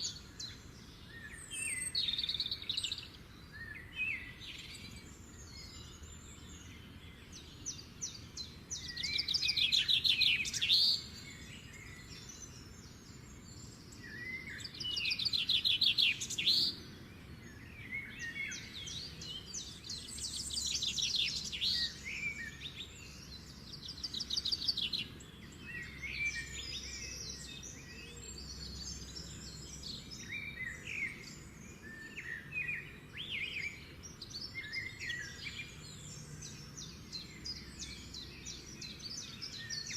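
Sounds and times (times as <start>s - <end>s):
bird trilled song: 0.0s - 39.9s
birds chirping: 0.0s - 39.9s.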